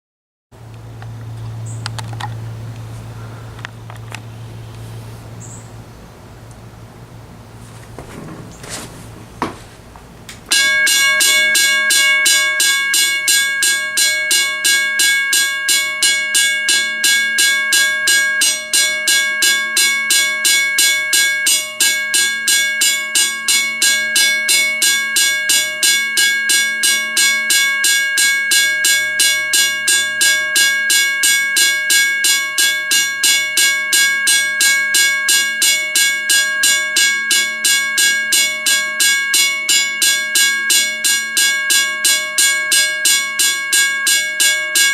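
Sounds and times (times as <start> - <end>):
railroad crossing bell ringing: 10.5 - 44.9.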